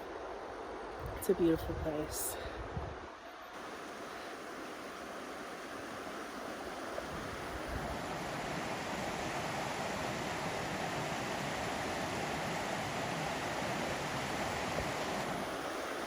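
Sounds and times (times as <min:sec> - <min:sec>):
river water rushing: 0:03.6 - 0:16.0.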